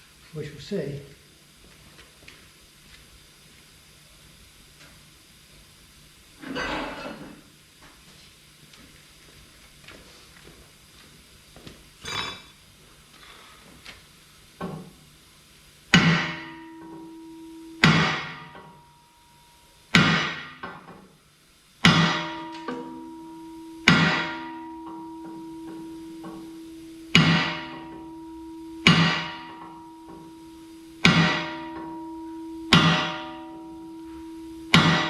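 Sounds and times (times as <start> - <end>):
hammer striking steel: 15.9 - 19.0, 19.9 - 20.9, 21.8 - 35.0.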